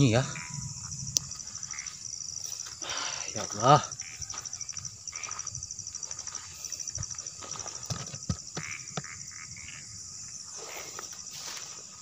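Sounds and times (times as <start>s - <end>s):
frog croaks: 0.0s - 2.2s, 3.6s - 5.5s, 8.5s - 10.1s
insects trilling: 0.0s - 12.0s.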